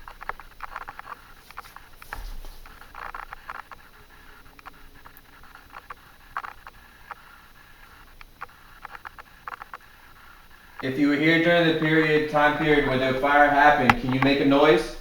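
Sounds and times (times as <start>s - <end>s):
small clicks and ticks: 0.0s - 10.8s.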